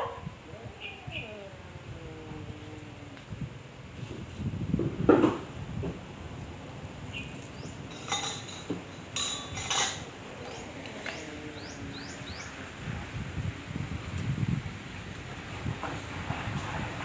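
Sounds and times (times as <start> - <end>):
dog barking: 0.0 - 0.4
small birds chirping: 0.5 - 3.0, 7.1 - 8.5, 10.0 - 12.8.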